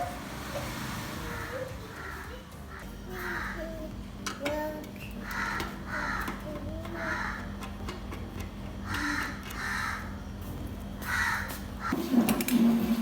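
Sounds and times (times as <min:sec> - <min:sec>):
crows cawing: 0:01.3 - 0:03.8, 0:05.2 - 0:07.6, 0:08.8 - 0:10.2, 0:11.0 - 0:12.0.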